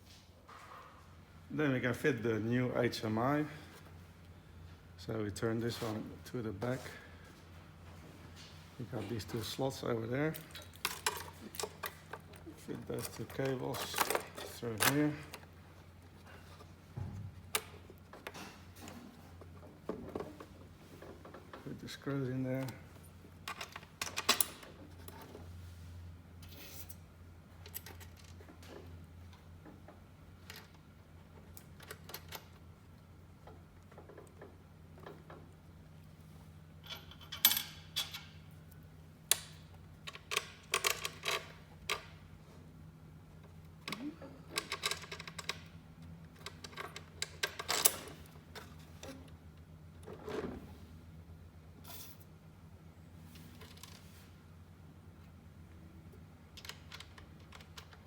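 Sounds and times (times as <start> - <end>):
clicks and metallic clatter of screws: 10.4 - 15.4, 36.8 - 38.4, 39.3 - 42.2.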